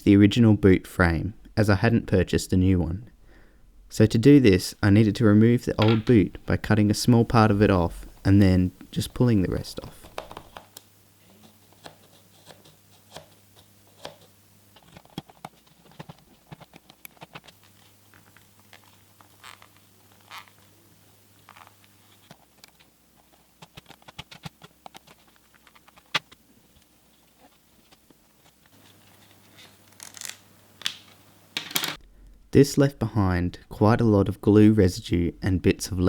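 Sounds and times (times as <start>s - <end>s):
leather being cut and scratched: 18.6s - 20.7s.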